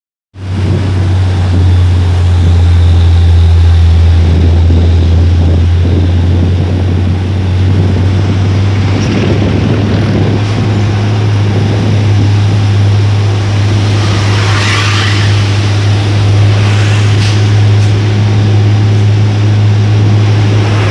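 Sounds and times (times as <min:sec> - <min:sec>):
diesel engine droning: 0:00.3 - 0:20.9
hiss burst: 0:11.8 - 0:19.2.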